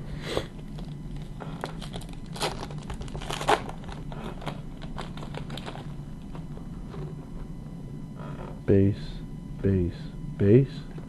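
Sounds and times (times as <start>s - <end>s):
wrapper crinkling and tearing: 1.6s - 5.9s.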